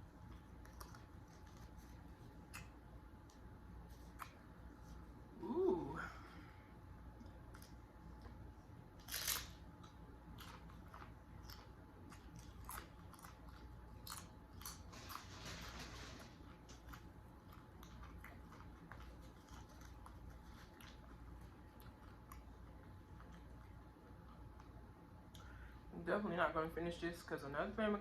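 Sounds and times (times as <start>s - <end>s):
tortilla chips crunching: 8.9s - 23.6s.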